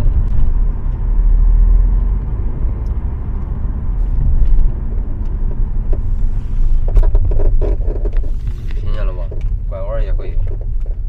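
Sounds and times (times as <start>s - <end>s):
road and tyre rumble: 0.0s - 11.0s.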